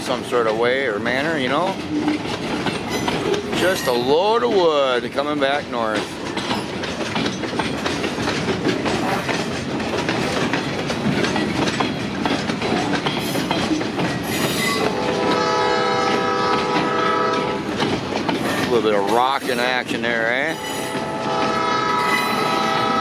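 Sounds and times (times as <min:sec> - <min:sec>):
train wheels clattering on rails: 0:00.0 - 0:23.0
locomotive horn blast: 0:14.8 - 0:17.7, 0:20.5 - 0:23.0.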